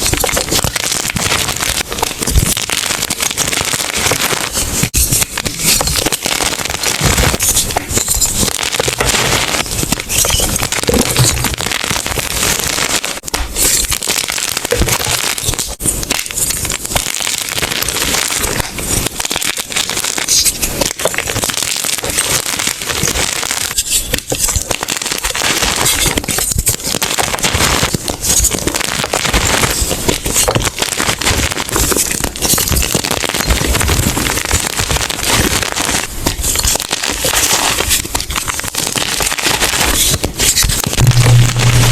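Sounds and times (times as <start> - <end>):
chalk blocks crunching: 39.8 - 41.9.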